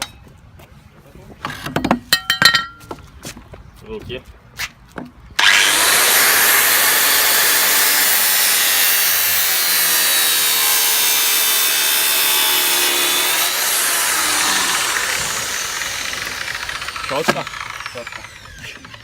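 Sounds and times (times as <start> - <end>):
angle grinder cutting: 5.4 - 19.0.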